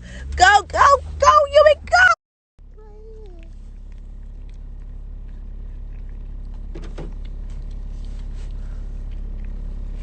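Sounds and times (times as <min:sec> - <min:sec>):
car cabin hum: 0:00.0 - 0:10.0.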